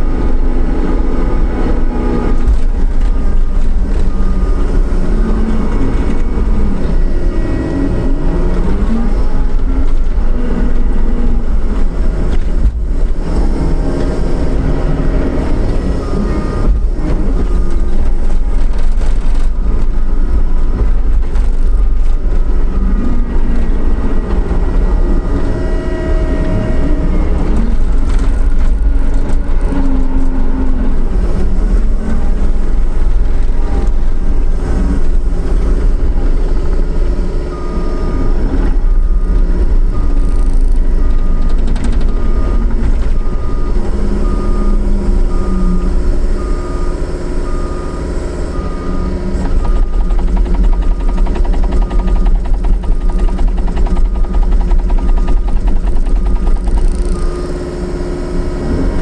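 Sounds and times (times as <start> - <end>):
diesel engine running: 0.0 - 59.0
backup alarm beeping: 37.4 - 57.8.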